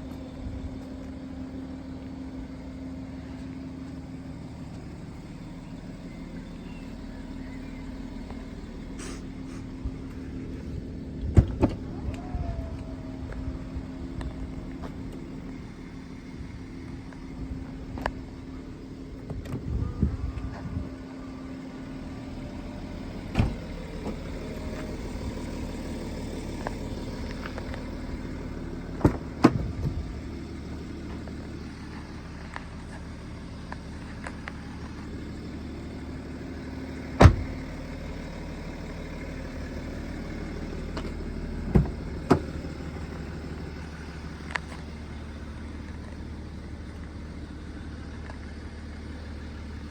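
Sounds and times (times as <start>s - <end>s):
car engine humming: 0.0s - 49.9s
car door clicks and thumps: 11.2s - 11.9s, 19.2s - 19.9s, 23.3s - 24.3s, 29.0s - 30.2s, 37.2s - 37.7s, 40.9s - 42.8s.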